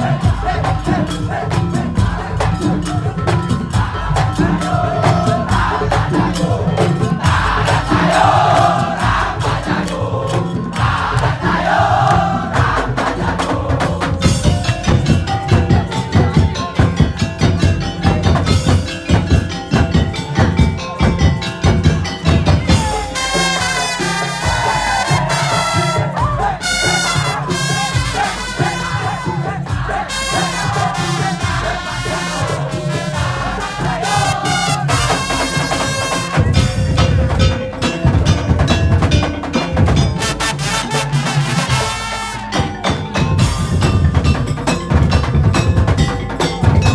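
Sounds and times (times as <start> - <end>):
heavy low drum beats: 0.0 - 46.9
wooden slit-drum rhythms: 0.0 - 46.9
wind instrument melody: 10.8 - 46.9.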